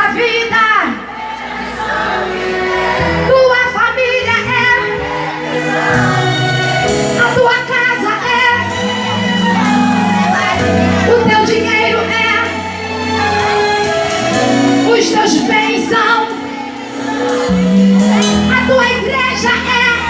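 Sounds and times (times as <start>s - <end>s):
band playing gospel music: 0.0s - 20.0s
voices singing: 1.1s - 7.2s.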